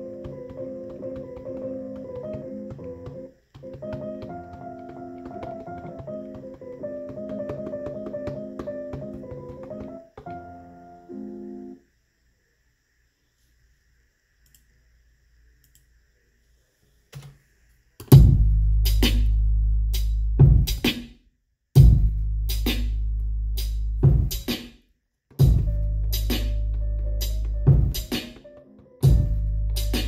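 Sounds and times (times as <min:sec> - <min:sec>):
hip-hop drum beat: 0:18.1 - 0:19.4, 0:20.0 - 0:21.1, 0:21.8 - 0:22.9, 0:23.6 - 0:30.0
long held bass notes: 0:25.4 - 0:28.0.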